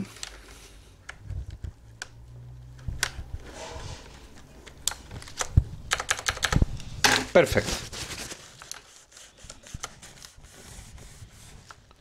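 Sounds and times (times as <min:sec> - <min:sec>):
keycaps clicking: 0:04.6 - 0:06.6.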